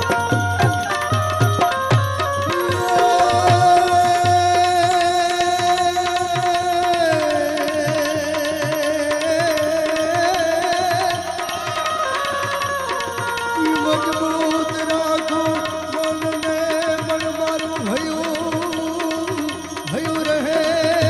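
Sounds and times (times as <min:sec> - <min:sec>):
hand drum beat: 0:00.0 - 0:05.7
wavering melody line: 0:02.4 - 0:05.2.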